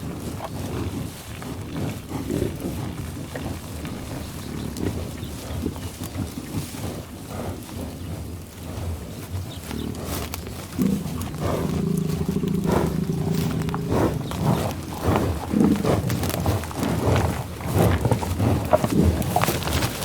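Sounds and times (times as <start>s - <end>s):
rustling: 7.8s - 20.0s
cow mooing: 10.8s - 16.0s
low grunting: 10.8s - 19.5s.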